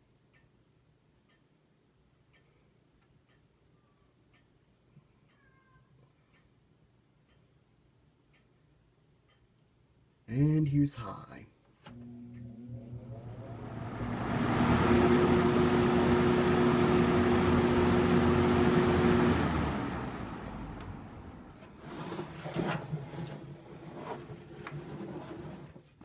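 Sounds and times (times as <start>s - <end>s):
box fan air rush and hum: 11.9s - 22.7s.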